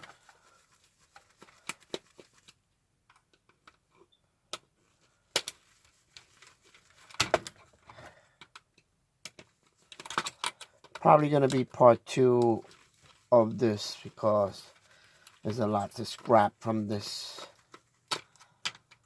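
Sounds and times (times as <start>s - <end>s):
plastic and metal parts clicking: 1.2s - 4.7s, 5.3s - 6.3s, 6.9s - 11.8s, 17.1s - 19.0s
parts clattering: 5.3s - 19.0s.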